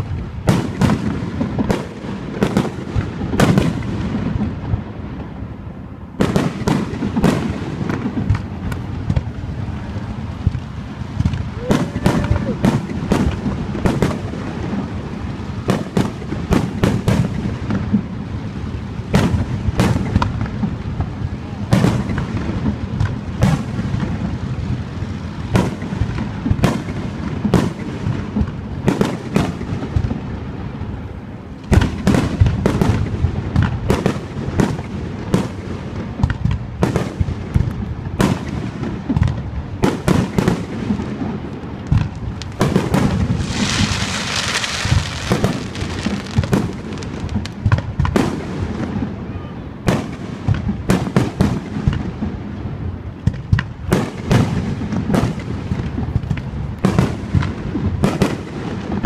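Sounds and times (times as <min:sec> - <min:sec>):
fireworks bangs: 0:00.0 - 0:59.0
fireworks hiss: 0:06.2 - 0:49.1.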